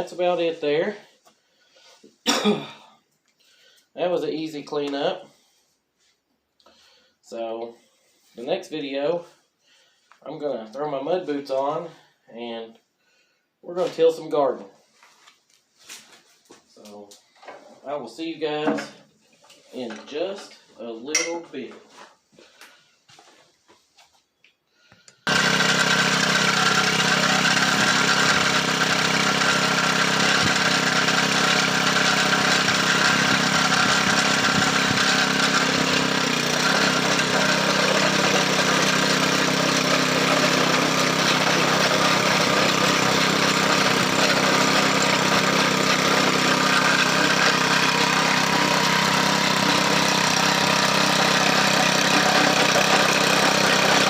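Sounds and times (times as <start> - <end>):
small engine running: 25.3 - 54.0.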